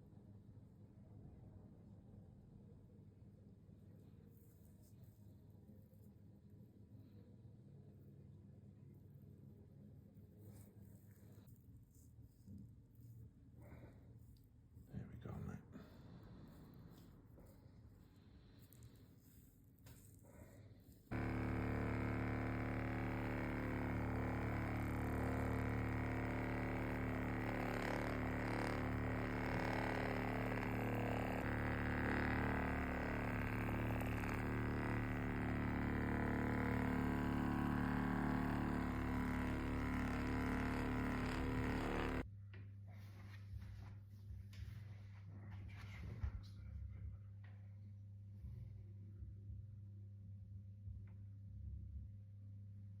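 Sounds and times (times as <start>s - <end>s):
even tones: 21.1s - 42.2s
machine hum: 21.1s - 42.2s.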